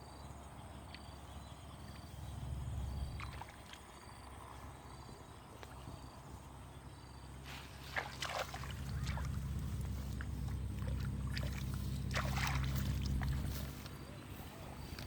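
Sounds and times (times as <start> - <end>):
low motor hum: 0.1 - 15.0
water splashing and sloshing: 2.9 - 4.8, 7.4 - 15.0.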